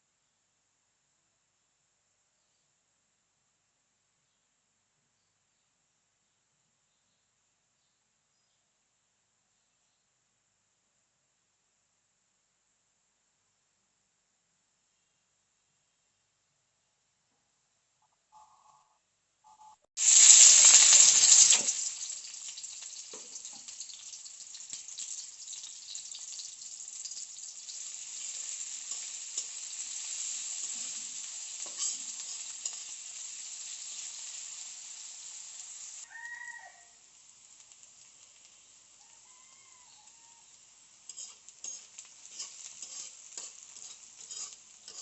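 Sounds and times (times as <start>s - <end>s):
food sizzling in hot oil: 20.0s - 45.0s.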